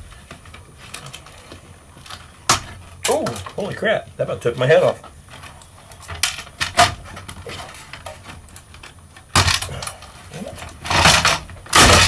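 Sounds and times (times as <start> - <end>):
loud metal clatter: 10.8 - 12.0.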